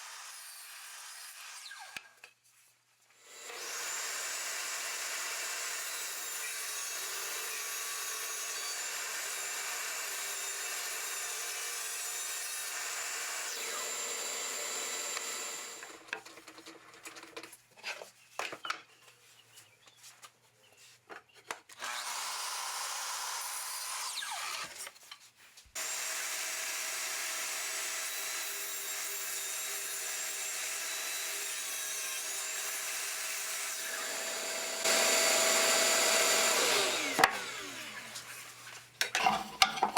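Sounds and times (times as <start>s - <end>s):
power saw cutting wood: 0.0s - 2.1s, 3.2s - 16.1s, 21.8s - 24.9s, 25.8s - 39.9s
knocks and handling of wood: 36.9s - 39.9s.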